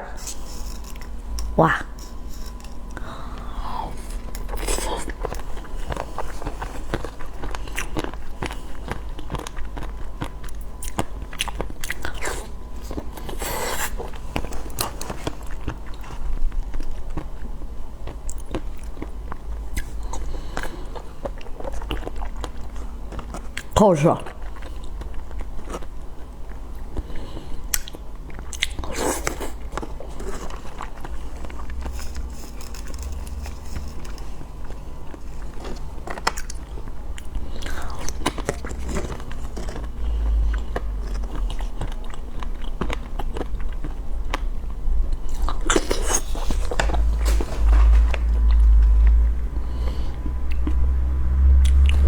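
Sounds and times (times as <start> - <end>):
person chewing food: 0.2 - 51.0, 51.6 - 52.0
steady low rumble: 43.8 - 52.0.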